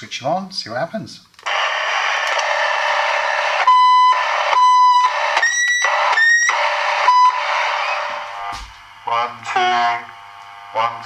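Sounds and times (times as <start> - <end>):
static hiss: 1.4 - 11.0
electronic beeping tones: 3.7 - 8.1.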